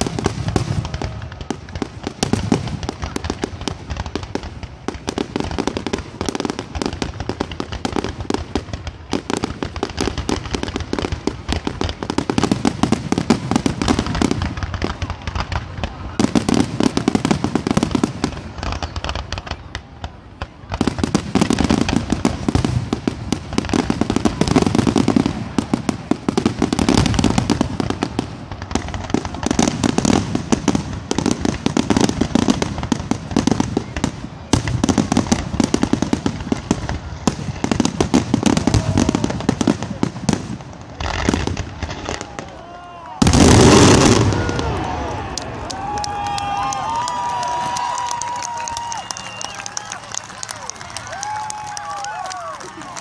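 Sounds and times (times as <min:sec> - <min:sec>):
fireworks bursting and crackling: 0:00.0 - 0:53.0.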